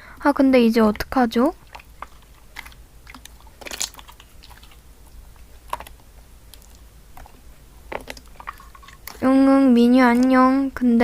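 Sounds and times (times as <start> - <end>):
slime clicks and crackles: 1.7 - 4.8.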